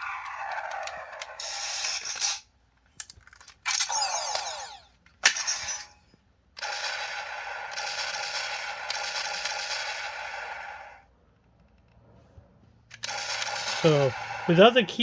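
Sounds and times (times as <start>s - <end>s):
toy blaster electronic effects: 0.0s - 2.5s, 3.6s - 11.0s, 13.0s - 15.0s
toy mechanism clicks: 0.0s - 11.0s, 12.9s - 15.0s.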